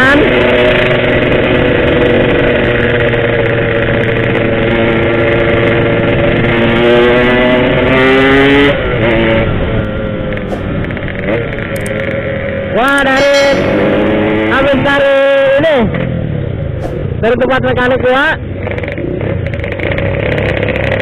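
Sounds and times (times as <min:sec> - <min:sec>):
two-stroke motorcycle engine: 0:17.8 - 0:21.0.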